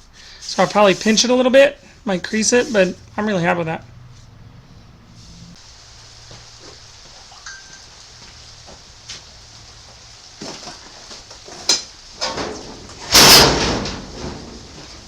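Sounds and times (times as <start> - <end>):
sheet metal rattling scrape: 11.5 - 15.0.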